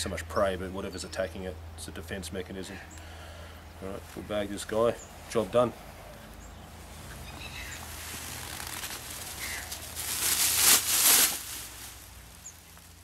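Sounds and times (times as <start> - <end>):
rustling noise: 6.2 - 13.0.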